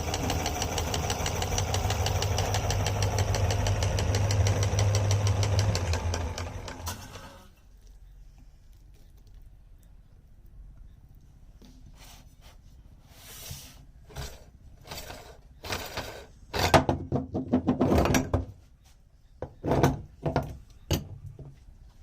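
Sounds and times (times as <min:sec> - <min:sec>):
meat grinder knocking and scraping: 0:00.0 - 0:07.4.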